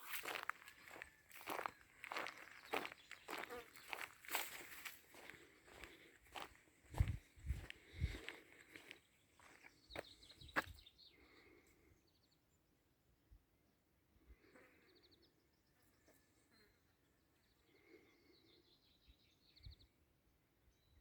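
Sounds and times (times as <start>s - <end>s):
sharp footsteps: 0.0s - 9.6s
faint birdsong chirps and trills: 0.0s - 21.0s.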